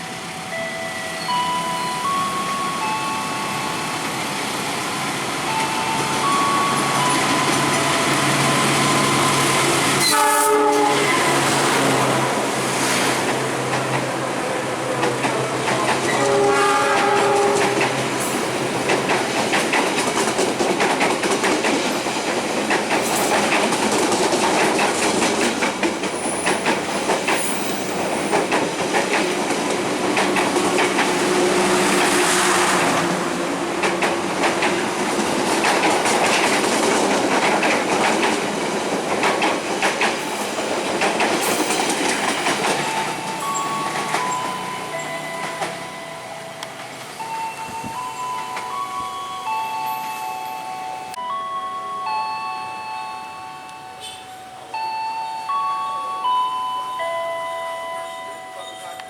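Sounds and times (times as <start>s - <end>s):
train wheels clattering: 1.3s - 50.1s
train horn: 9.2s - 12.4s, 16.0s - 18.0s, 31.1s - 33.9s.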